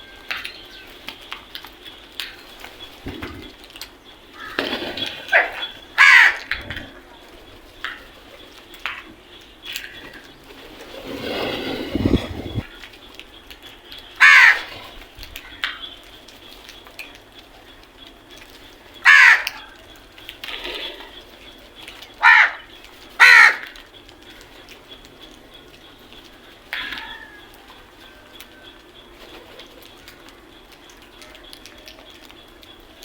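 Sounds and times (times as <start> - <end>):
crow cawing: 4.3 - 4.6, 5.3 - 6.7, 14.2 - 14.9, 19.0 - 19.8, 22.2 - 23.9, 26.7 - 27.6.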